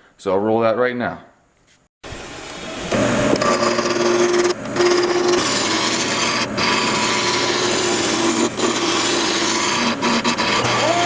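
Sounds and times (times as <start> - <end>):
lathe motor hum: 2.1 - 11.0
cutting tool scraping on lathe: 3.2 - 11.0.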